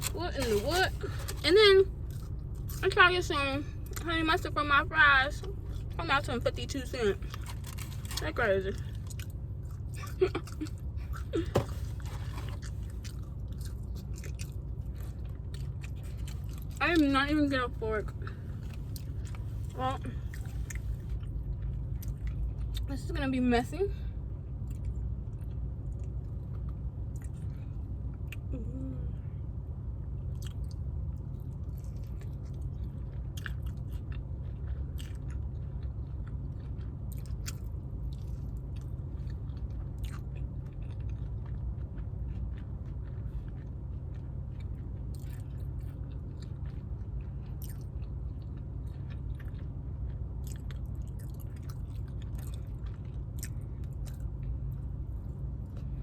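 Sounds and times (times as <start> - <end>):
chewing and biting food: 0.0 - 3.0, 6.6 - 17.4, 18.0 - 22.9, 24.4 - 28.5, 30.0 - 56.0
steady low hum: 0.0 - 56.0
food crunches: 7.1 - 16.8, 30.3 - 55.9.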